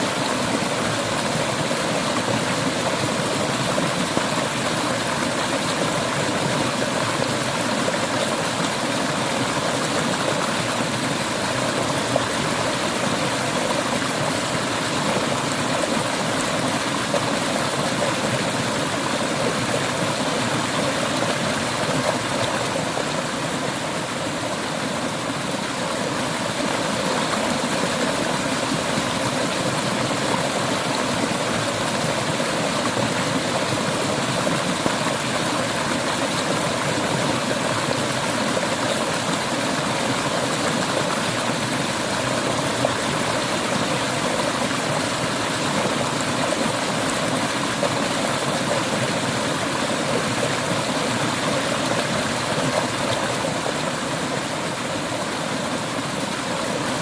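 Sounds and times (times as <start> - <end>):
river water rushing over rocks: 0.0 - 57.0.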